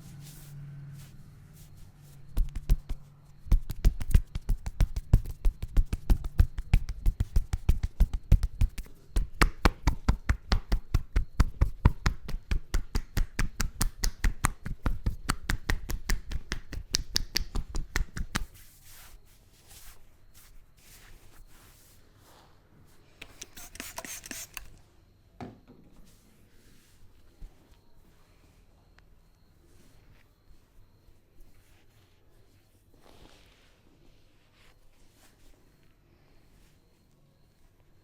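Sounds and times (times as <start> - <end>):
hands tapping and slapping on head: 2.3 - 18.5.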